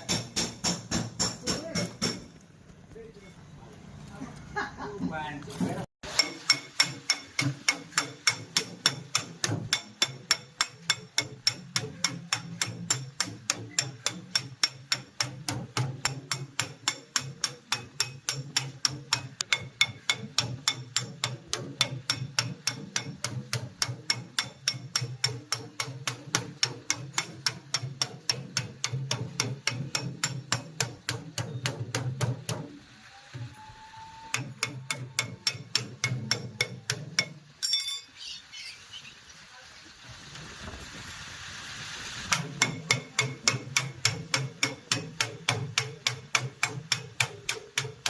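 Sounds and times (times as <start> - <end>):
rapid hammer blows: 42.2 - 48.0.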